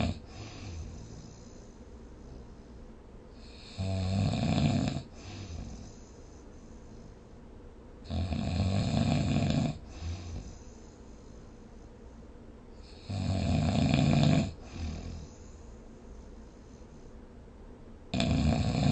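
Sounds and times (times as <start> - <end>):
person snoring: 0.0 - 1.6, 3.4 - 6.1, 8.1 - 10.6, 12.8 - 15.6, 18.1 - 18.9.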